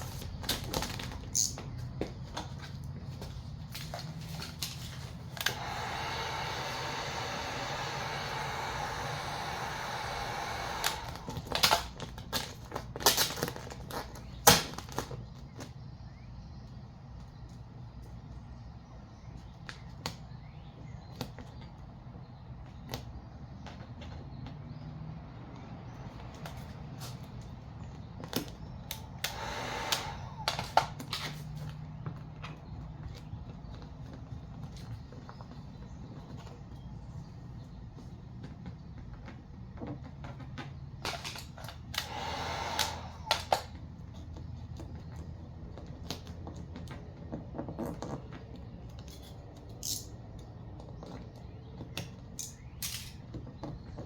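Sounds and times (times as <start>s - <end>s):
steady whirring blow: 4.7s - 12.3s, 28.4s - 31.4s, 41.1s - 44.2s.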